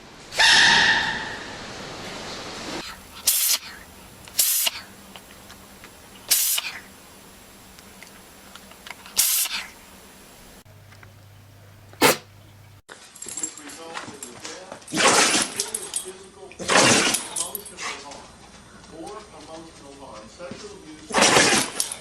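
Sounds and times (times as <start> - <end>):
animal sneezing: 2.8 - 4.9, 9.1 - 9.8, 11.0 - 12.8.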